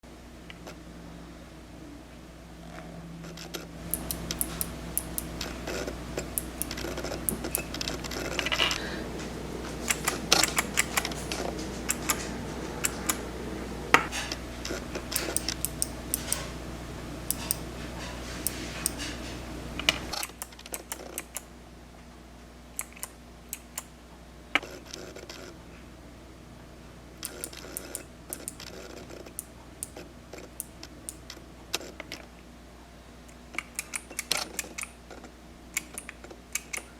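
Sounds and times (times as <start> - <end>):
camera autofocus hum: 3.2 - 21.5
clicky keyboard switches clicking: 15.2 - 16.4, 22.8 - 23.9, 35.8 - 36.9.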